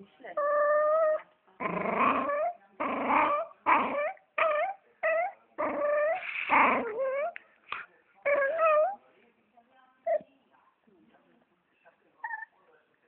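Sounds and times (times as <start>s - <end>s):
dog making voice-like calls: 2.1s - 7.4s.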